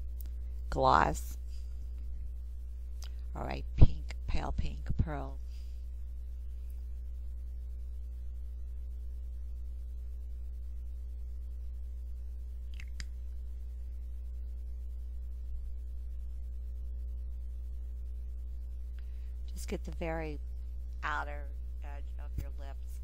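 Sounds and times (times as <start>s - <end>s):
low hum: 0.0s - 23.0s.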